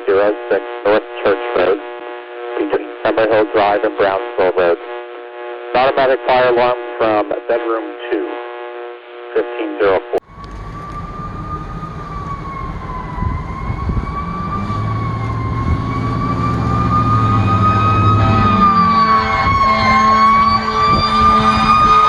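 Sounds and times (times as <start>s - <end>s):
fire truck siren wailing: 10.2s - 22.0s
heavy truck engine running: 10.3s - 18.8s.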